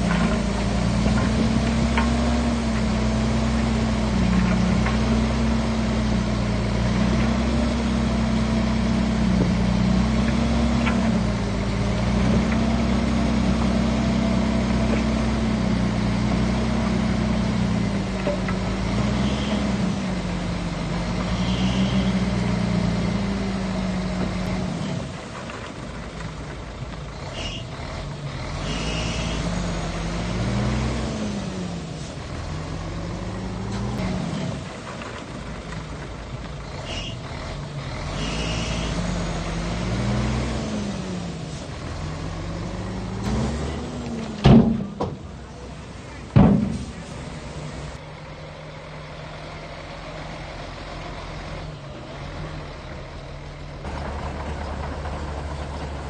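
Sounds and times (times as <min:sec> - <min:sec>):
bulldozer diesel engine working: 0:00.0 - 0:56.0
short high squeals: 0:21.3 - 0:22.2, 0:28.6 - 0:29.8, 0:38.2 - 0:39.0.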